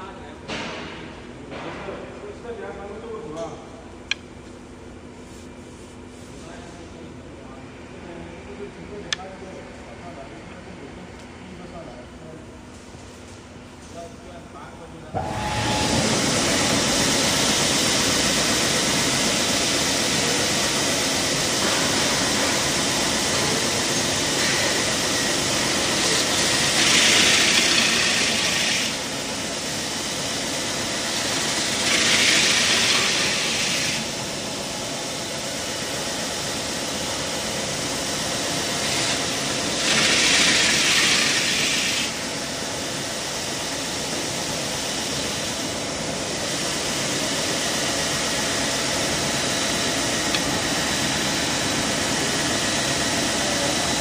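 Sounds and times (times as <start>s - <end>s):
belt sanding machine running: 15.2s - 43.0s, 43.7s - 54.0s.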